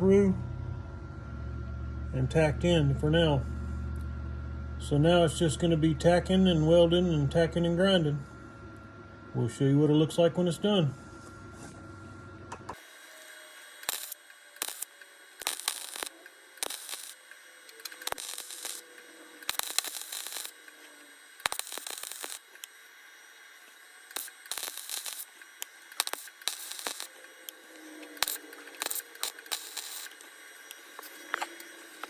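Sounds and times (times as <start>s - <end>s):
welder crackling and hissing: 12.7s - 32.0s.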